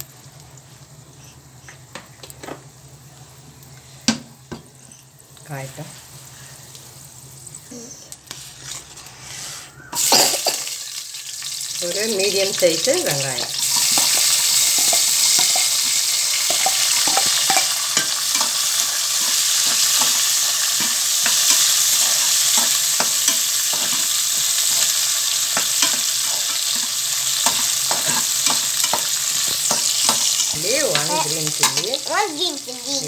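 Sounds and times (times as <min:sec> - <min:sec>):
onion sizzling in hot oil: 0:00.0 - 0:09.4, 0:10.0 - 0:33.0
spatula scraping pan: 0:13.0 - 0:32.3.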